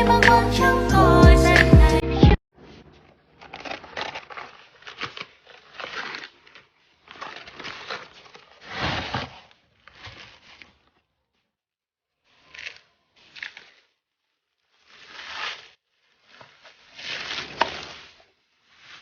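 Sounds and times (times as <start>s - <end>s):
packaging crinkling and rustling: 2.7s - 11.1s.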